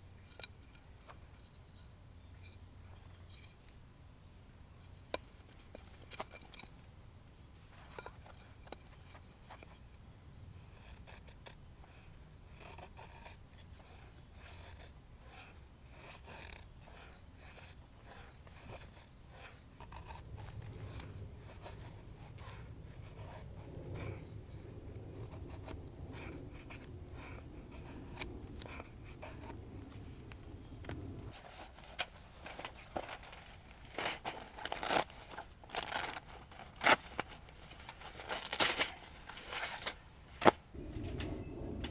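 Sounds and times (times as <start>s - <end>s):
low rumble: 20.1s - 31.4s, 40.7s - 41.9s.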